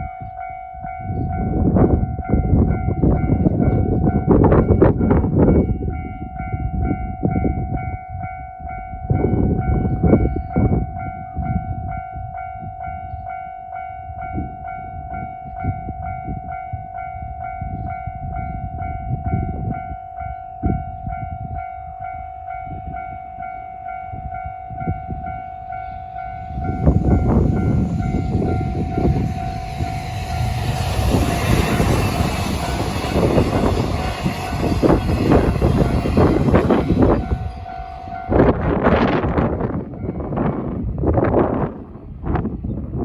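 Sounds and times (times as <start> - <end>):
freight train wheels rumbling: 0.0 - 43.0
level-crossing alarm ringing: 12.7 - 40.4.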